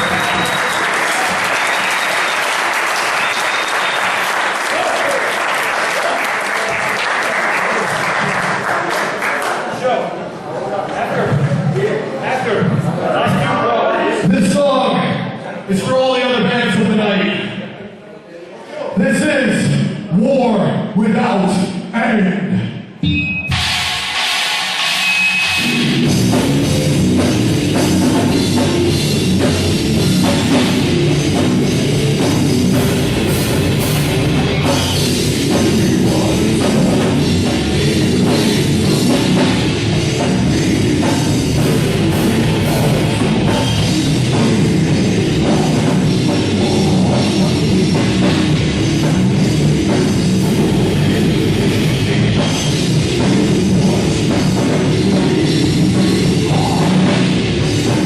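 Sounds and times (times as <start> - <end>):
bass guitar: 0.0 - 1.8, 25.1 - 58.0
distorted electric guitars: 0.0 - 2.0, 22.4 - 58.0
fast drumming: 0.0 - 8.7, 23.5 - 58.0.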